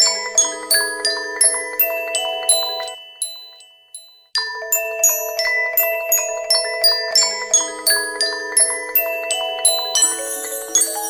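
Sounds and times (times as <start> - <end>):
chime-like ringtone melody: 1.4 - 5.4, 6.3 - 11.0.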